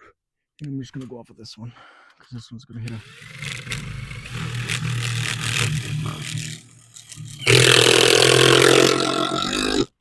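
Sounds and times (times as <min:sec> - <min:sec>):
power drill driving screw: 0:02.9 - 0:09.7.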